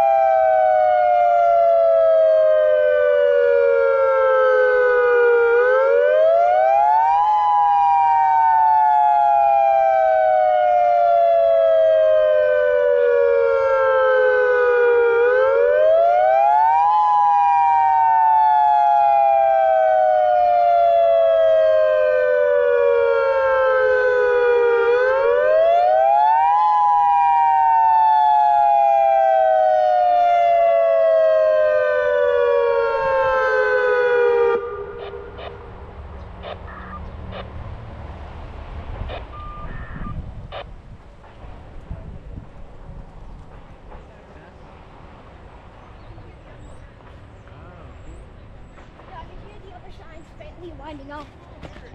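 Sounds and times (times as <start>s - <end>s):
dual-tone rising and falling siren: 0.0s - 40.7s.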